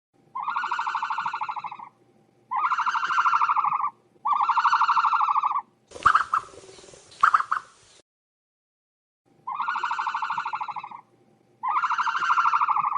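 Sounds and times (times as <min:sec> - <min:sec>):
ostrich calls: 0:02.5 - 0:07.8.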